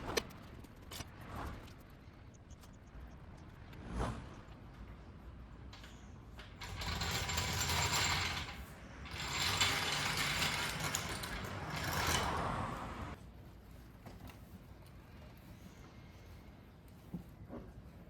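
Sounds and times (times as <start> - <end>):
floor jack rattling and ratcheting: 5.8 - 13.2.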